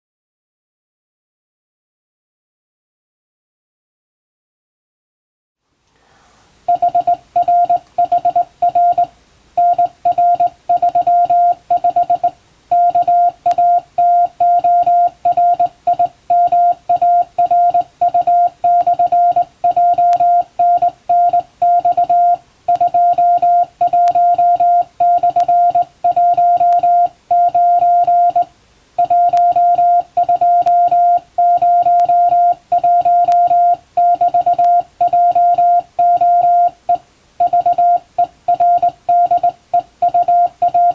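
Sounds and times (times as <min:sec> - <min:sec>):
morse code tone: 0:06.7 - 0:40.9.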